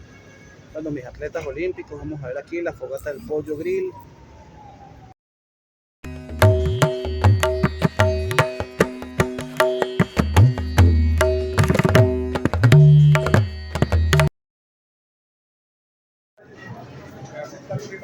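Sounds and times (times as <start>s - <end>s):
music with rhythmic drums: 6.1s - 14.3s.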